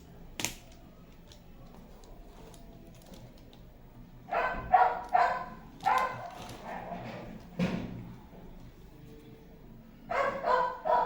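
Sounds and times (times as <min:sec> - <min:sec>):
dog barking: 0:04.3 - 0:07.0, 0:10.1 - 0:11.0.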